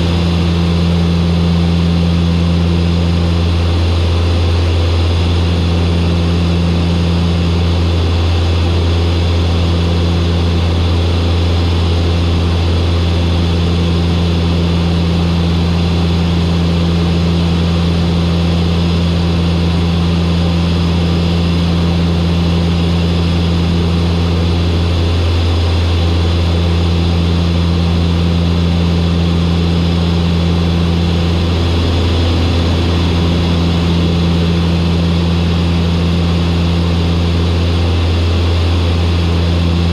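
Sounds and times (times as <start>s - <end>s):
turboprop engines droning: 0.0s - 39.9s.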